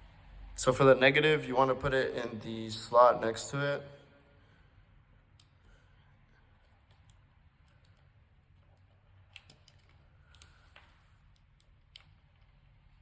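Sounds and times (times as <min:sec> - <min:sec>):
faint clicks handling wire: 0:05.2 - 0:13.0.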